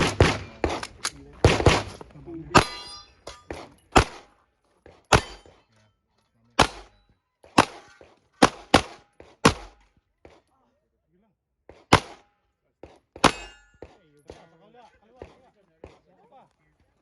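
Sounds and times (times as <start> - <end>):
handgun shots: 0.0 - 2.0, 2.6 - 4.3, 5.1 - 5.6, 6.6 - 9.9, 11.7 - 12.3, 13.1 - 14.0
steel target clang: 2.5 - 4.3, 5.1 - 5.6, 6.6 - 7.0, 13.2 - 13.9.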